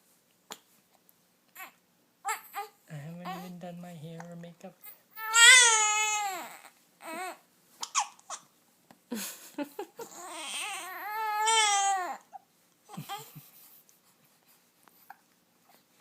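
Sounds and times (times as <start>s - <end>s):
baby crying: 1.6s - 3.4s, 4.8s - 8.4s, 10.0s - 13.3s.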